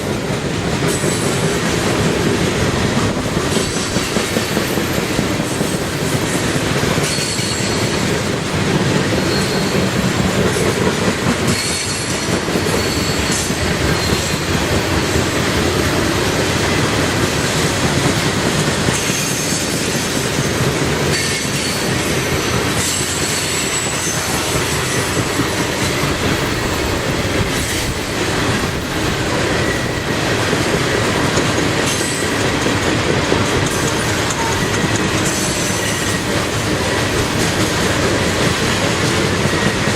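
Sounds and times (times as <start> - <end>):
train wheels clicking over rail joints: 0.0 - 39.9
high-pitched wheel squeal: 9.1 - 10.0, 11.5 - 14.5.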